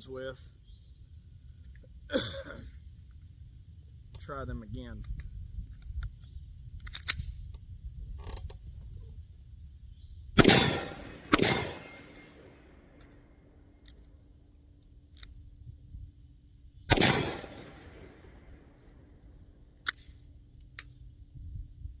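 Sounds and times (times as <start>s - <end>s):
pistol shots ringing out: 10.4s - 13.0s, 16.9s - 18.4s.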